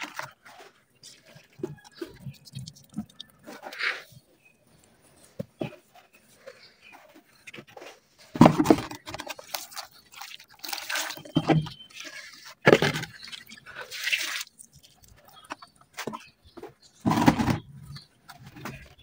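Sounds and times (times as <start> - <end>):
wet dirt squelching and splashing: 0.0 - 4.3, 8.4 - 16.3.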